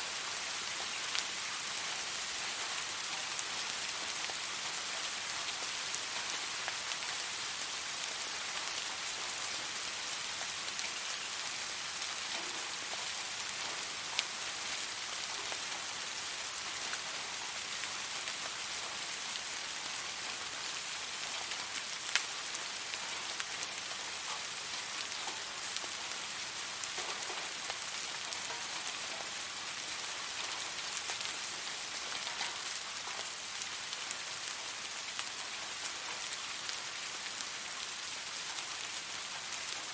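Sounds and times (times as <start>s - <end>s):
steady rain hiss: 0.0s - 39.9s
raindrops ticking: 12.0s - 15.9s, 21.1s - 34.5s.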